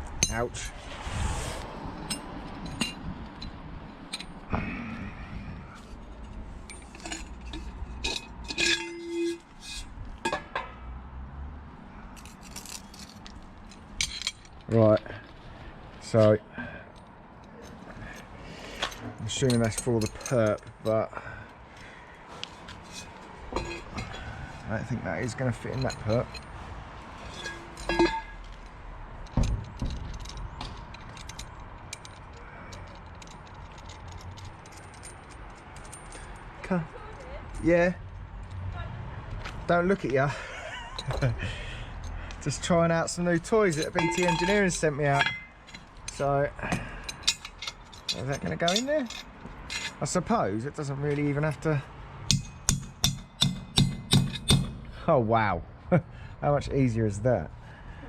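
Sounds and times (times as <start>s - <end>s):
metal tools clinking and knocking: 0.2s - 0.8s, 2.0s - 4.8s, 5.7s - 10.8s, 12.1s - 15.4s, 16.0s - 22.0s, 22.7s - 37.7s, 40.3s - 50.3s, 51.1s - 54.8s.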